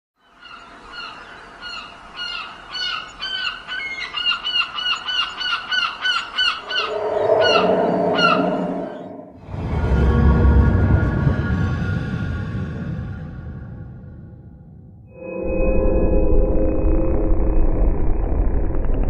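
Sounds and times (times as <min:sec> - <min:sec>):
low steady drone: 0:06.6 - 0:10.4, 0:15.2 - 0:19.0.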